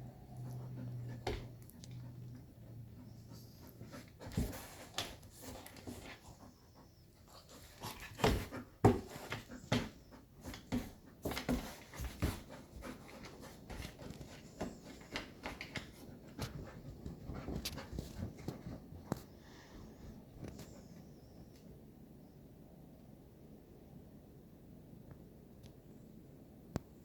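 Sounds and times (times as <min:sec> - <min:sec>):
dog panting: 0:00.0 - 0:19.0.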